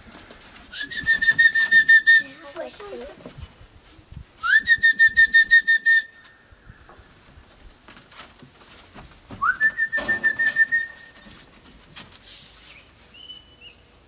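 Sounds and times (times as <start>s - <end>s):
person whistling: 0.7s - 2.4s, 4.4s - 6.2s, 9.4s - 11.2s
faint bird chirps: 12.2s - 13.9s.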